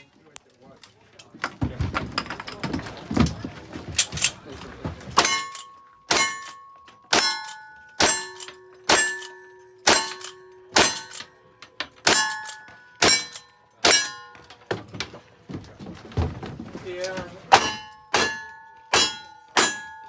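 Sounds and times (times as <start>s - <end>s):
steel target clanging: 4.0s - 14.7s, 17.2s - 20.0s.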